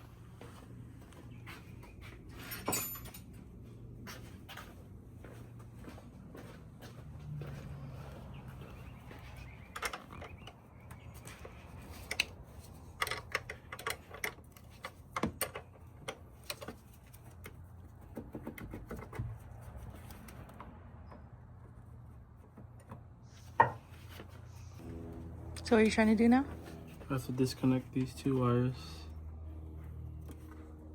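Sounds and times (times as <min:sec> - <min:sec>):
hand tools clicking and tapping: 0:09.6 - 0:19.4.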